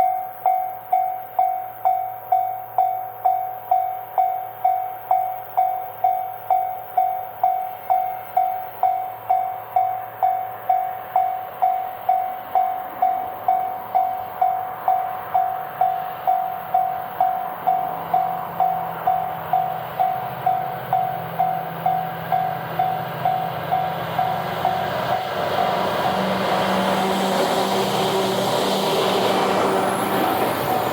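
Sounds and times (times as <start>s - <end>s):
level-crossing warning bell: 0.0s - 30.9s
train rumble passing: 7.8s - 30.9s.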